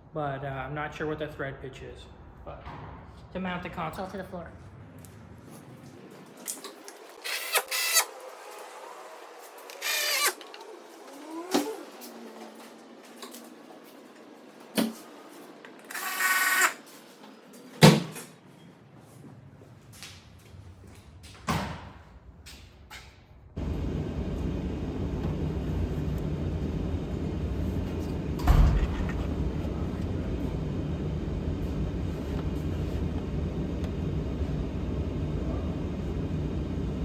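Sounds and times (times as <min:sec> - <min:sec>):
climate control blower blowing: 0:23.6 - 0:37.0
thump: 0:28.4 - 0:29.3.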